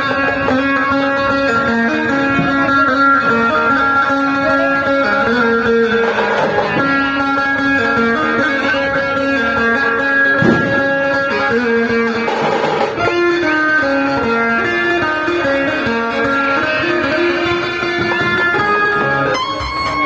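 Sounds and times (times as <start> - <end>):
plucked-string melody: 0.0 - 20.0
sharp hit: 10.4 - 11.5.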